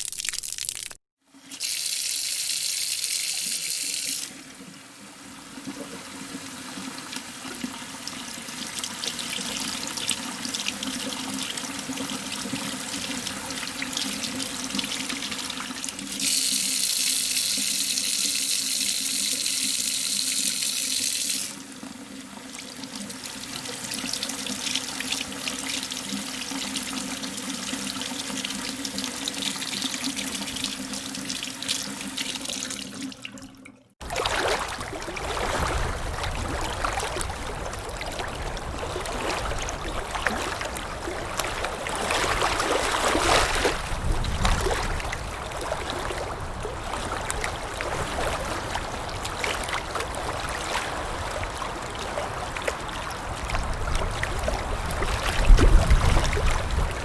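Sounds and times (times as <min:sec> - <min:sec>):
tap water pouring into metal tray: 0:00.0 - 0:04.8, 0:05.5 - 0:35.0.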